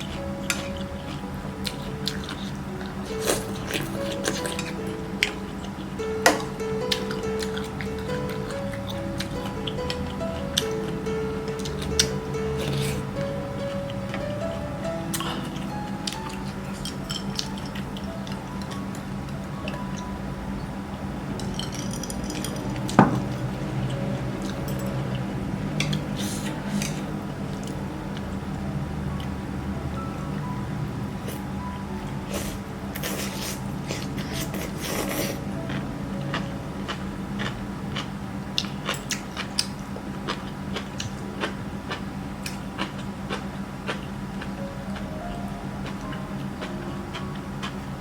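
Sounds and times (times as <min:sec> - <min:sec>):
wet squishy eating noises: 0:00.0 - 0:06.1
chewing crunchy food: 0:00.0 - 0:13.2, 0:32.3 - 0:45.2, 0:45.8 - 0:48.0.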